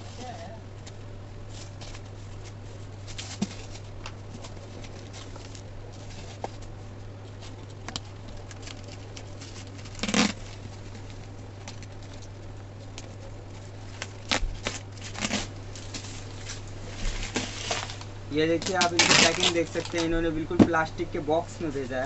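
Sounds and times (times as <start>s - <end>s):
steady low hum: 0.0s - 22.0s
packaging clicks and scrapes: 1.6s - 20.1s
packaging ripping: 7.6s - 12.4s, 13.0s - 20.2s.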